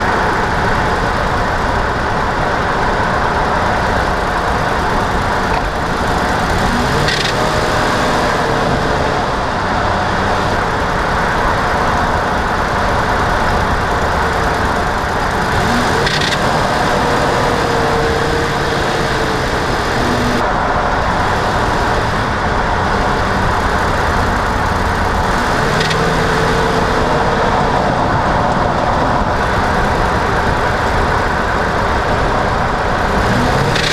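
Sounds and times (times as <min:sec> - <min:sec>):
truck engine and road noise: 0:00.0 - 0:33.9
brief sharp ratcheting sound: 0:07.0 - 0:07.4, 0:16.0 - 0:16.5.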